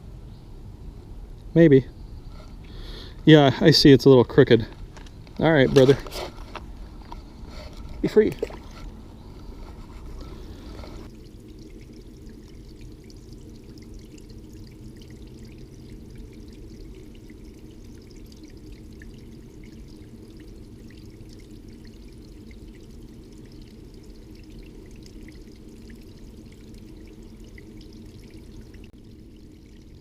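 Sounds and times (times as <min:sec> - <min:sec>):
small splashing trickles: 0:01.9 - 0:30.0
river water flowing: 0:04.7 - 0:11.7.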